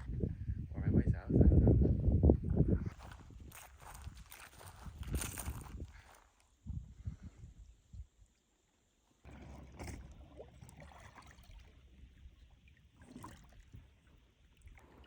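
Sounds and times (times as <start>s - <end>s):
water lapping and splashing: 9.2s - 15.0s.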